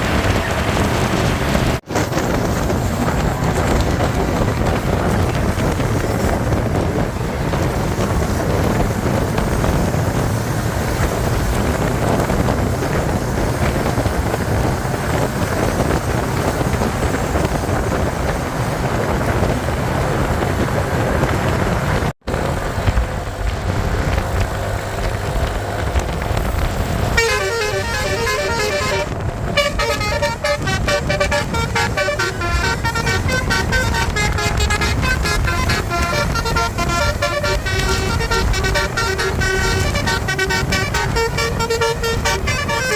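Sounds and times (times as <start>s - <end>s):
traffic rumble: 0.0s - 42.9s
wind on microphone: 0.0s - 42.9s
multi-tone musical bus horn: 27.0s - 42.9s.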